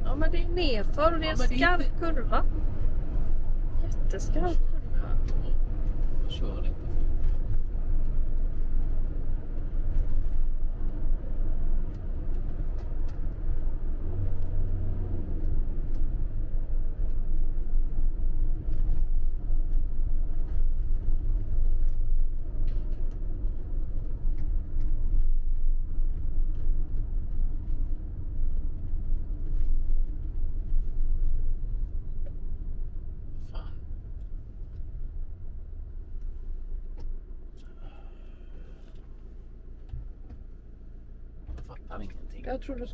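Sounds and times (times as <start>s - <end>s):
engine and road rumble: 0.0s - 42.9s.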